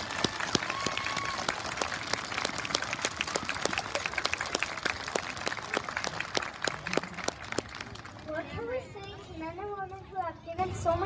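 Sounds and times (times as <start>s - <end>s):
audience applauding: 0.0s - 8.2s.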